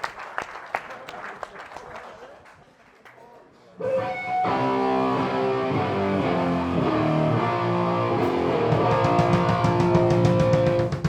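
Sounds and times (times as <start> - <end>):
electric guitar playing chords: 3.8 - 11.0
drum hits: 8.2 - 11.0.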